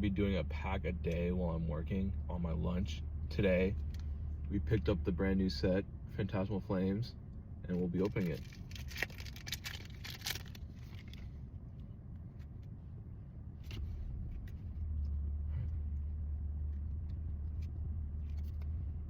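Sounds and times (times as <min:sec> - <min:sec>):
low rumble: 0:00.0 - 0:19.0
trading cards rustling and clicking: 0:07.7 - 0:11.4, 0:16.8 - 0:18.8.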